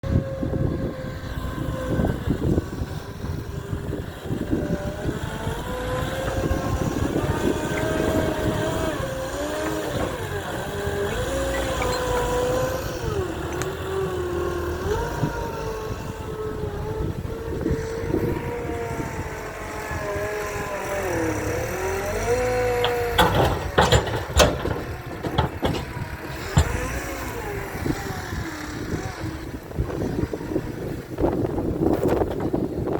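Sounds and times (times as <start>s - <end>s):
loader engine revving: 0.3s - 31.2s
knocks and clanks: 22.3s - 27.3s.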